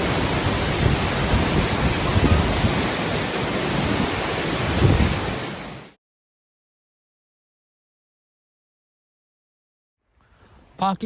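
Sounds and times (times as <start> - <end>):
wind rumbling on microphone: 0.0 - 5.9
waterfall roaring: 0.0 - 6.0.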